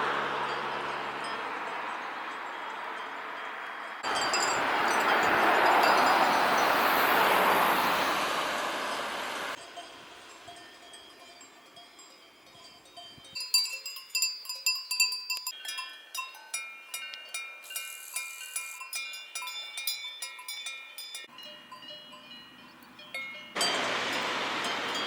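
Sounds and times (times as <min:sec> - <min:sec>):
cowbells clanking: 0:00.5 - 0:06.8, 0:09.5 - 0:25.0
loud rushing noise: 0:23.7 - 0:25.0.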